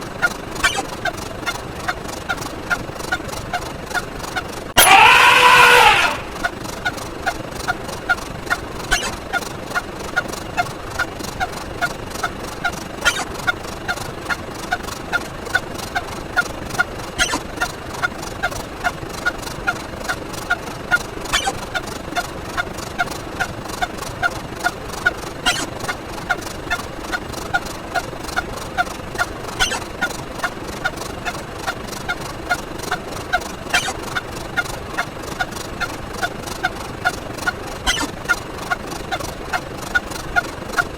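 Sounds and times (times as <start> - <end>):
short pitched sound effect repeating: 17.2 - 17.5, 21.3 - 21.6, 25.5 - 25.7, 29.6 - 29.9, 33.7 - 34.0, 37.9 - 38.1.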